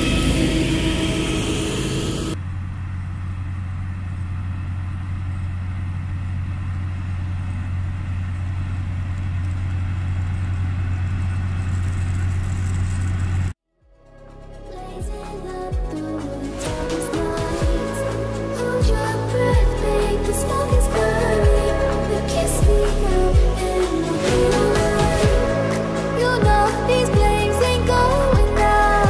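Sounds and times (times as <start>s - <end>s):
machinery running loudly: 0.0s - 2.5s, 15.7s - 29.0s
low engine hum: 14.4s - 29.0s.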